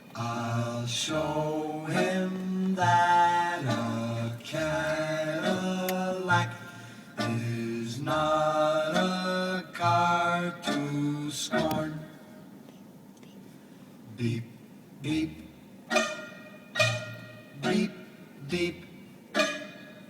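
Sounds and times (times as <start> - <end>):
person singing unaccompanied: 0.0 - 12.4, 14.2 - 16.2, 16.8 - 19.8.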